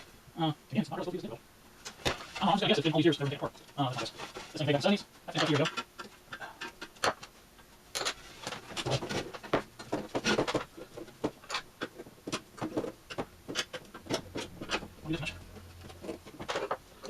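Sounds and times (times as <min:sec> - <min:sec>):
hands clicking and scraping metal chassis: 0:01.8 - 0:17.0.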